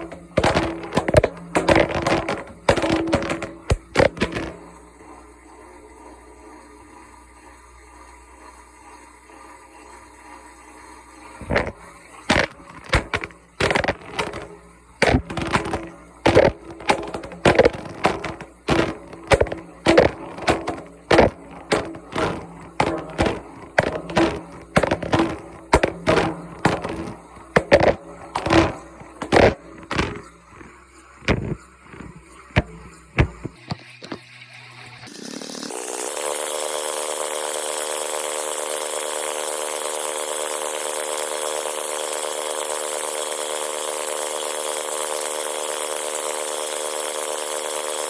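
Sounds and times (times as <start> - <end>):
phone thudding in washing machine drum: 0.0 - 4.9, 11.4 - 34.3
washing machine hum: 0.0 - 35.4.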